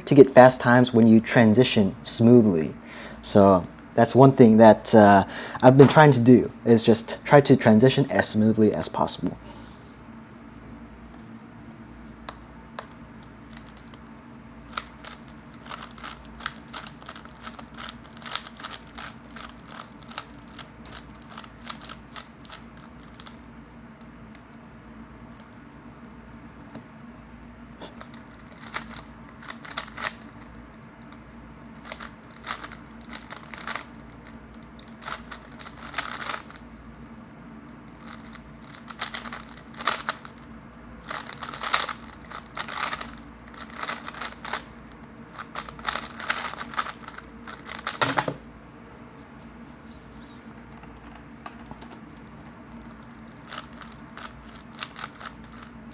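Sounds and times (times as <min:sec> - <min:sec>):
plastic puzzle cube layers clicking: 0:31.7 - 0:33.9, 0:35.0 - 0:36.6, 0:45.4 - 0:48.1.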